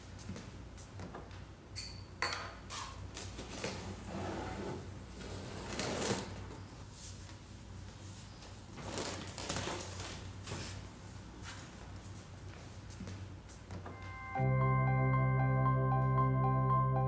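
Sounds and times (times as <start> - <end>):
short high tone: 14.0 - 17.0.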